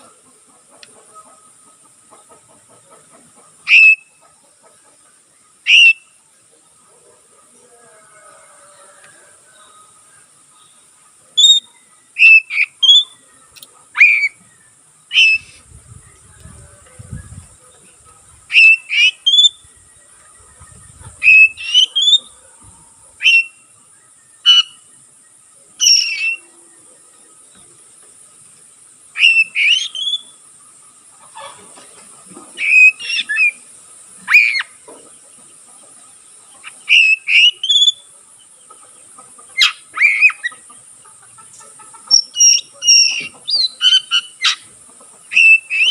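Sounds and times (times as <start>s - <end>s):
steady high-pitched hiss: 0.0s - 45.9s
bird singing whistled phrases: 3.7s - 4.1s, 5.6s - 6.0s, 11.4s - 13.2s, 14.0s - 14.4s, 15.1s - 15.6s, 18.5s - 19.6s, 23.2s - 23.6s, 25.8s - 26.4s, 29.2s - 30.3s, 32.6s - 33.6s, 36.9s - 38.0s, 45.4s - 45.9s.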